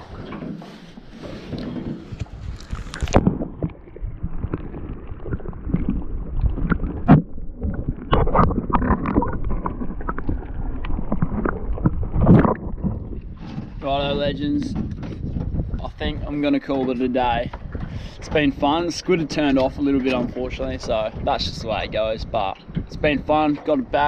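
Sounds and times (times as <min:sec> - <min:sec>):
knocks and clatter on boat: 0:00.0 - 0:04.4, 0:11.0 - 0:24.0
water sloshing against boat hull: 0:00.0 - 0:24.0
wind buffeting microphone: 0:00.0 - 0:24.0.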